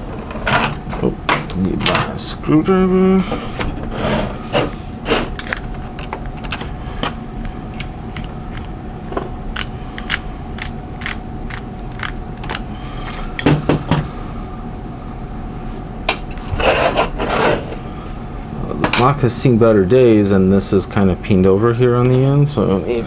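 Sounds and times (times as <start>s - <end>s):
faint hum: 0.0s - 23.0s
screwdriver clicking and scraping metal: 9.5s - 12.6s.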